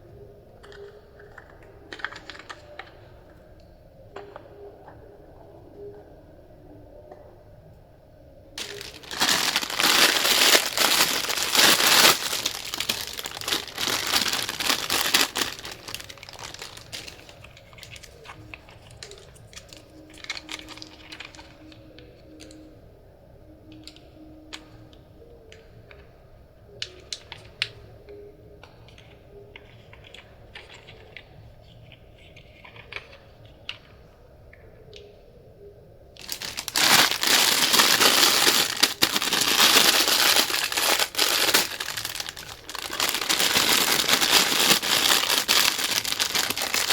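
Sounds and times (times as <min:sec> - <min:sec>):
crinkling and crumpling: 0:00.6 - 0:03.4, 0:08.6 - 0:22.6, 0:28.6 - 0:34.0, 0:36.2 - 0:46.9.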